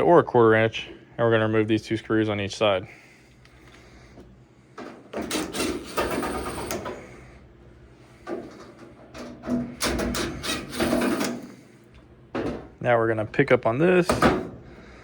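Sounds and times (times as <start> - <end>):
cordless driver backing out screws: 5.2 - 7.0, 9.2 - 11.5.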